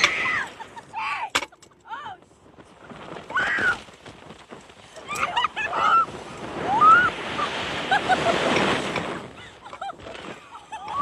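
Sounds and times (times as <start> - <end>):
riders shrieking: 0.0 - 1.3, 3.3 - 3.9, 5.0 - 7.5
wind rushing over microphone: 2.0 - 11.0.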